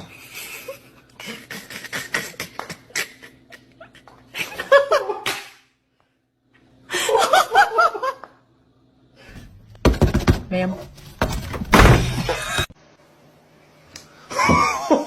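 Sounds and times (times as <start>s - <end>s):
person laughing: 0.1s - 5.3s, 12.2s - 12.7s, 14.3s - 15.0s.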